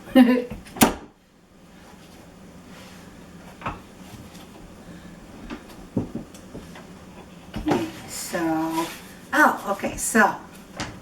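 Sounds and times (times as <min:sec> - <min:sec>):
bench seat clicks and knocks: 0:00.5 - 0:01.2.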